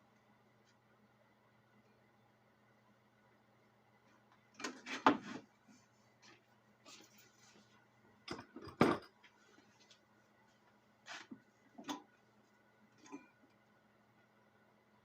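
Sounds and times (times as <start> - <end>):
faint steady hum: 0.0 - 15.0
hard objects knocking and clattering: 8.3 - 9.2.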